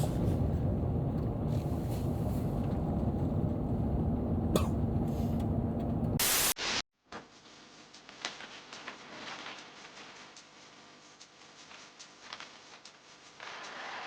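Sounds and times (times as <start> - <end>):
vehicle engine rumble: 0.0 - 6.2.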